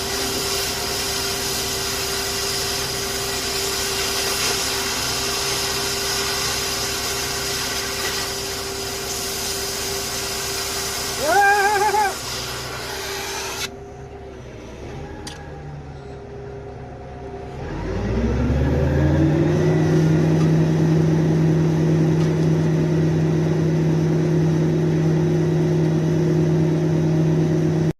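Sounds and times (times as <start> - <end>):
motor starting and humming: 8.6 - 23.3.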